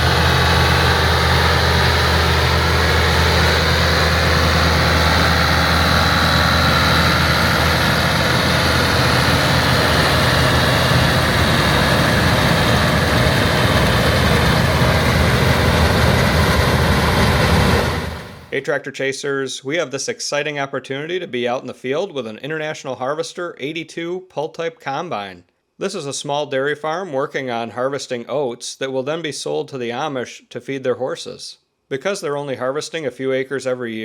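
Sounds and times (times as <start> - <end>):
combine machinery hum: 0.0 - 18.5
tractor engine drone: 0.0 - 18.5.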